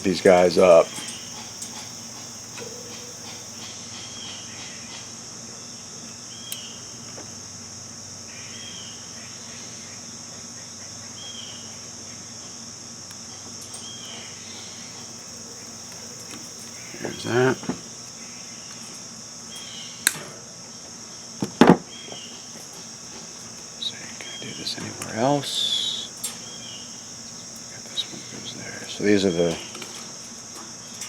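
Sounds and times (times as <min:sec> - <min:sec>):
crickets trilling: 0:00.0 - 0:31.0.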